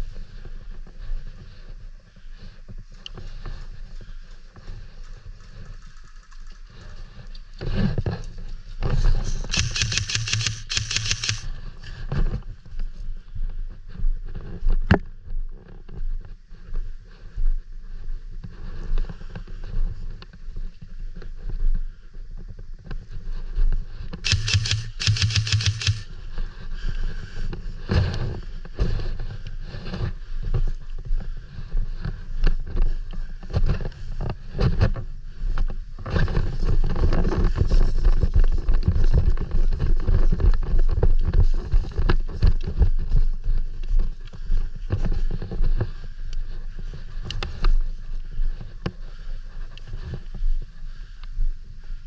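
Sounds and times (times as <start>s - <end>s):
footsteps: 8.9s - 11.5s, 24.2s - 26.1s
low wind rumble on microphone: 26.1s - 52.0s.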